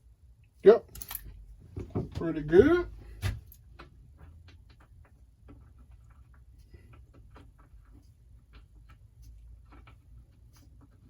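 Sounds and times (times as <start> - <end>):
small metal parts clicking: 0.9 - 1.4.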